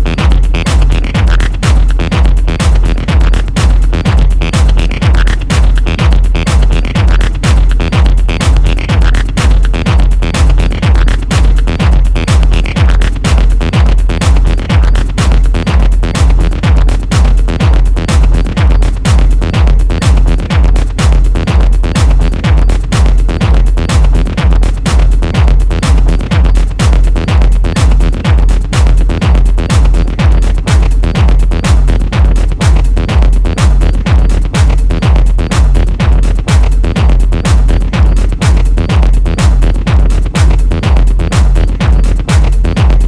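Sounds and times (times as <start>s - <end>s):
electronic dance music: 0.0s - 43.0s
fast kick drum beat: 0.0s - 43.0s.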